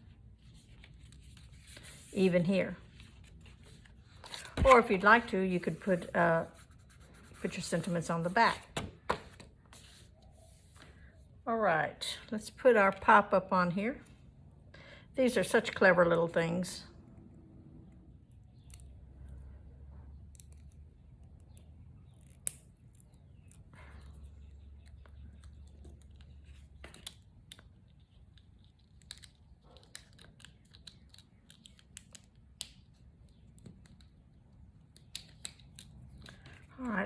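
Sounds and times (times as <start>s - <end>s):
paper rustling: 0.3s - 11.0s.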